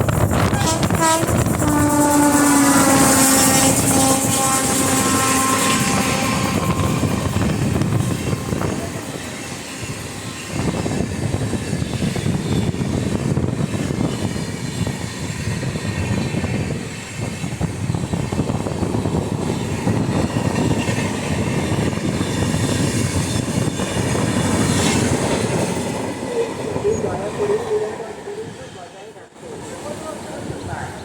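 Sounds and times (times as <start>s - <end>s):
passenger train rumbling past: 0.0s - 31.0s.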